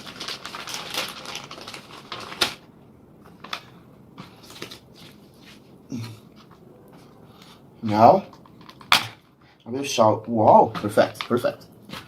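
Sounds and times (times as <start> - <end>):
small objects clicking and rustling: 8.2 - 9.3.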